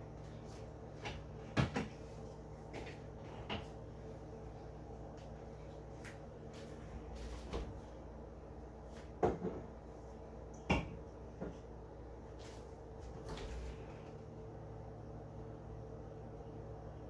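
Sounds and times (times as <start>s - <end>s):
refrigerator low hum: 0.0s - 17.0s.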